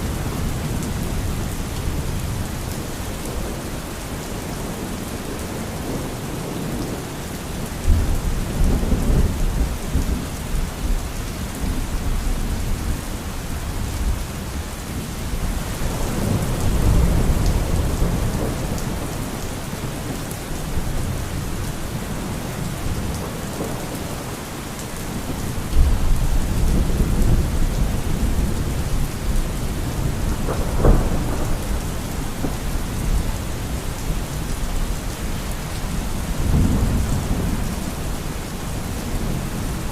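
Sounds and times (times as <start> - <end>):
heavy rain: 0.0 - 39.9
rolling thunder: 25.2 - 35.0
sharp thunderclap: 30.2 - 32.6.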